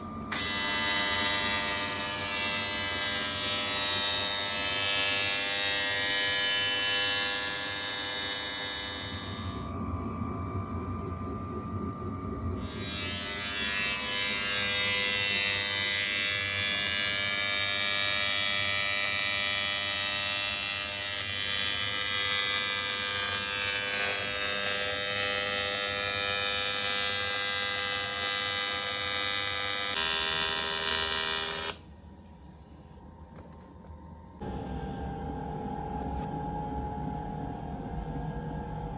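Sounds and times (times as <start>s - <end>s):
welding arc buzzing: 0.0s - 9.8s, 12.6s - 31.9s.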